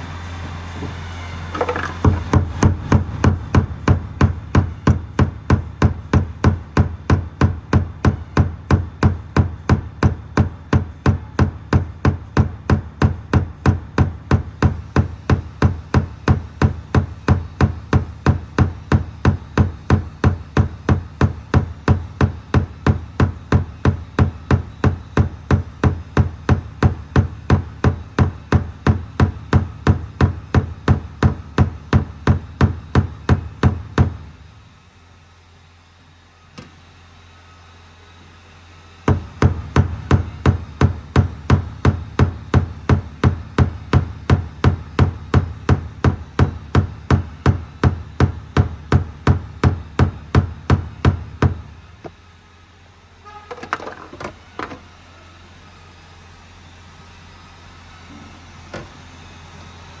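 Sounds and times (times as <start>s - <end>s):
loud rhythmic thumping: 0.3s - 34.5s, 39.0s - 52.1s.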